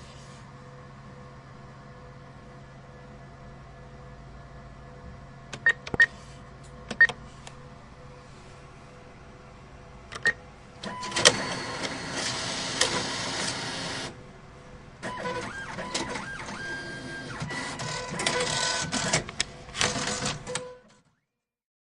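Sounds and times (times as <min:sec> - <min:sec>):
cash machine whirring and clicking: 0:10.1 - 0:14.2, 0:15.0 - 0:21.0.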